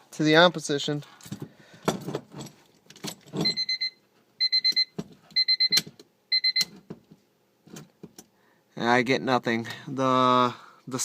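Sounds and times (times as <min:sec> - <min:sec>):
car warning chime beeping: 0:03.4 - 0:06.8.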